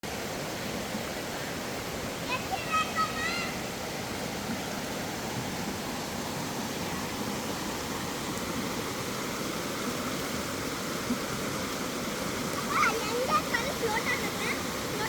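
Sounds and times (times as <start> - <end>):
stream water rushing over rocks: 0.0 - 15.0.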